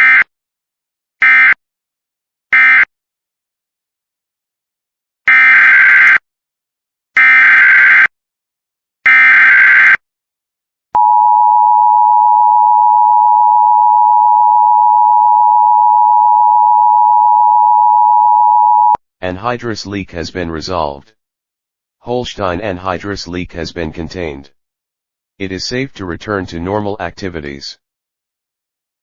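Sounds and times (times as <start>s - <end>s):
two-tone attention signal: 11.0s - 19.0s.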